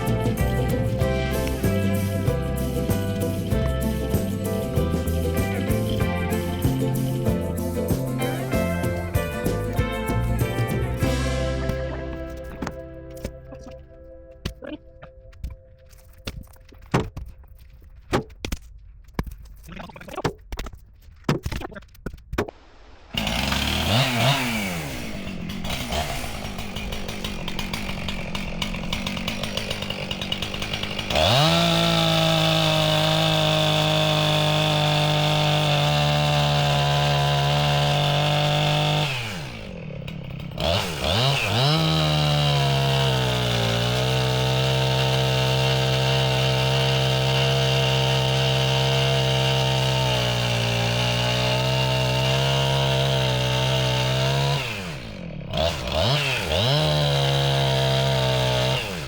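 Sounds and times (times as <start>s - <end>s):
chainsaw idling and revving: 0.0s - 13.3s, 23.1s - 59.0s
chainsaw cutting wood: 0.0s - 14.6s, 22.8s - 59.0s
sharp clicks and knocks: 14.4s - 22.6s.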